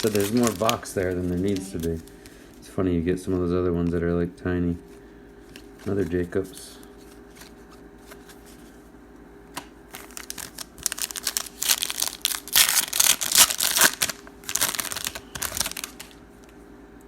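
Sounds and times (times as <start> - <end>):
plastic wrapper crinkling: 0.0 - 2.6, 9.9 - 16.2.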